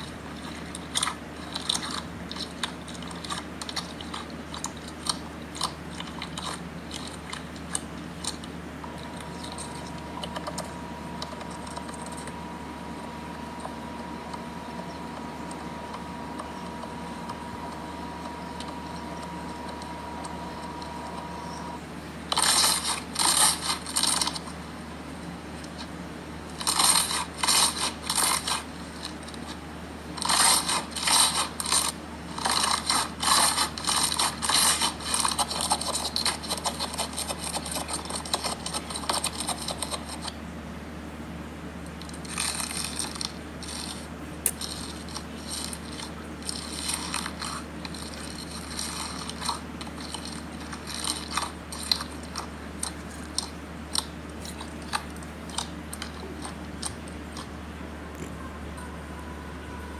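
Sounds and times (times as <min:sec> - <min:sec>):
slime crackling and popping: 0:42.0 - 0:57.5.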